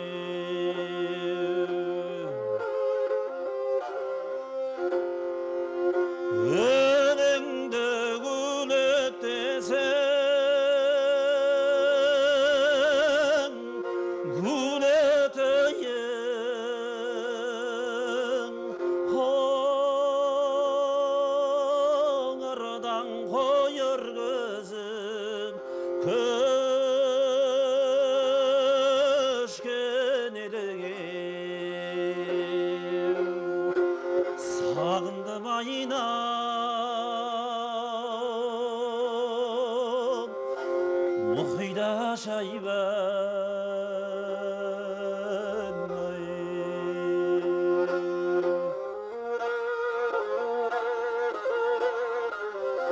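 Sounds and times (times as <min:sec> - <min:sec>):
bowed string instrument melody: 0:00.0 - 0:52.9.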